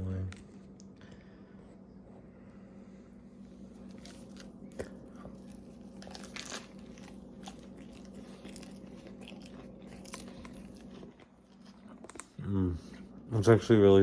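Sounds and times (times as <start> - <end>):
steady low hum: 0.0 - 14.0
person chewing food: 3.4 - 13.2.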